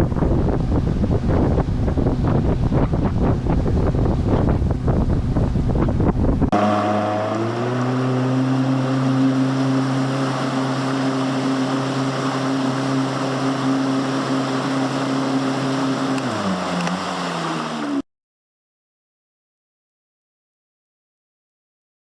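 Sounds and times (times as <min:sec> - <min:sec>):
wind on microphone: 0:00.0 - 0:06.7
engine running: 0:00.0 - 0:18.0.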